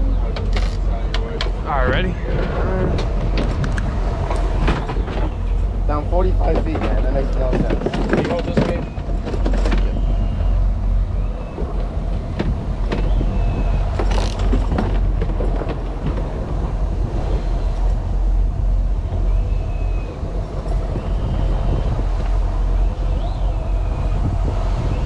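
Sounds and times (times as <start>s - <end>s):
scattered knocks: 0.0s - 10.3s, 11.5s - 19.3s
boat engine rumbling: 0.0s - 25.0s
wind buffeting microphone: 0.0s - 25.0s.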